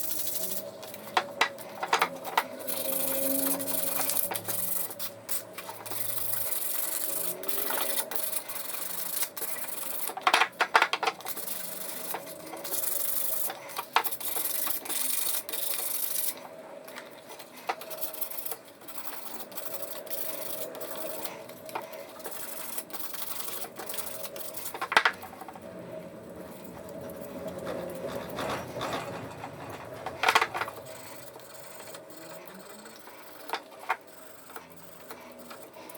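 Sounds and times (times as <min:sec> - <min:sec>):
rubbing and scraping on metal: 0:00.0 - 0:35.9
small motor running: 0:02.2 - 0:05.1, 0:30.6 - 0:35.9.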